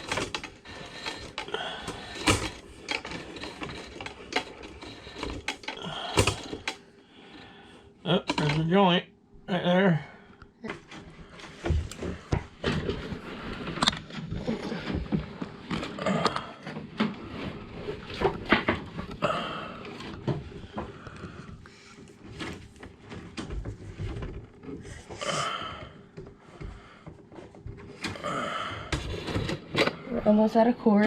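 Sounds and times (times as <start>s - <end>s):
cable clicking and rubbing: 0.0s - 6.8s.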